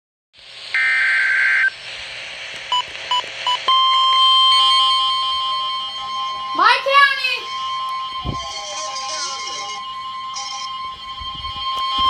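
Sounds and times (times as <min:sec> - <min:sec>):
steady warning alarm tone: 0:02.7 - 0:12.0
warbling data burst: 0:02.7 - 0:12.0.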